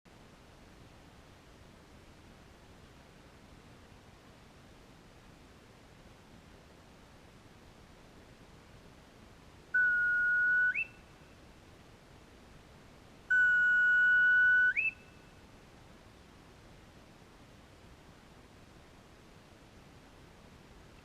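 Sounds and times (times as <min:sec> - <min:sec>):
whistle blown: 0:09.8 - 0:11.0, 0:13.3 - 0:15.3.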